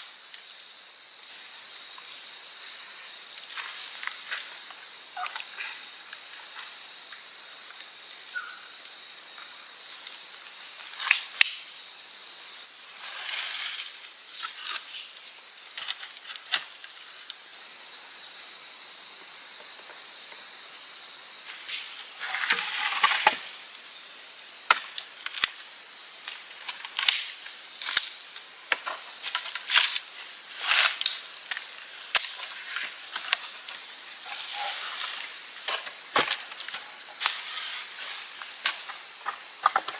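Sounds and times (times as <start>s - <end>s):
rustling of wood: 1.3s - 7.9s, 12.9s - 17.4s, 21.4s - 39.9s
sticks snapping and knocking: 26.7s - 30.0s, 30.6s - 32.5s.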